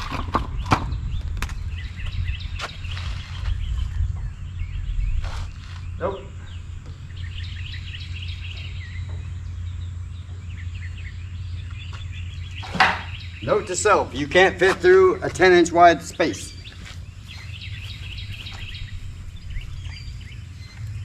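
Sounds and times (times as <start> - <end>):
birds chirping: 0.0 - 21.0
steady low rumble: 0.0 - 21.0
sharp knocks: 12.6 - 13.2.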